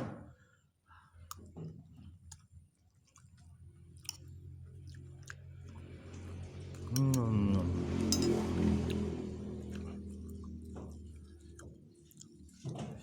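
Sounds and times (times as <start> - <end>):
person chewing food: 1.2 - 12.7.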